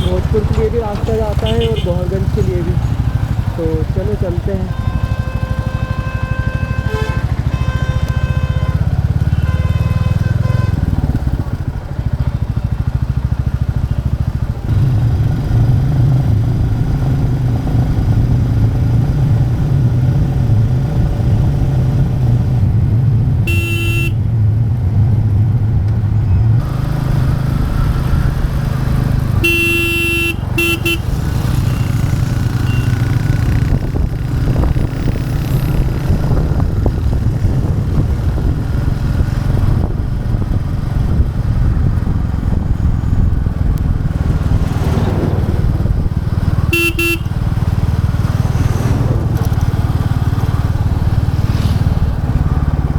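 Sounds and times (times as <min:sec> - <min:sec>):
motorcycle engine thumping: 0:00.0 - 0:05.1, 0:29.2 - 0:52.9
horn blasts: 0:04.5 - 0:11.0, 0:23.4 - 0:24.2, 0:29.4 - 0:33.1, 0:46.6 - 0:47.6.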